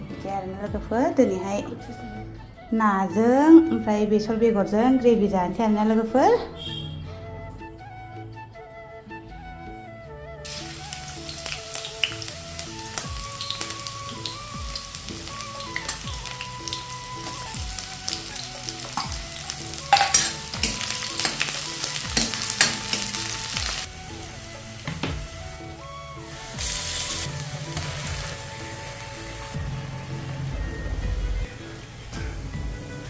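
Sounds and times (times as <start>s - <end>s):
food sizzling in hot oil: 10.5s - 30.8s.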